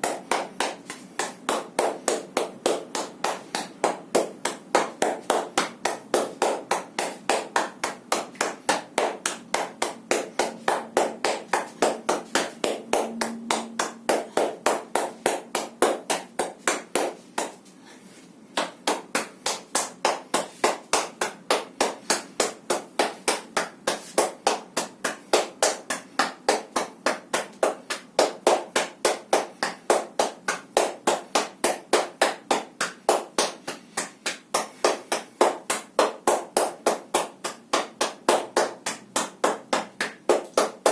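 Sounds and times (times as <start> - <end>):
hands slapping body rhythmically: 0.0 - 40.9.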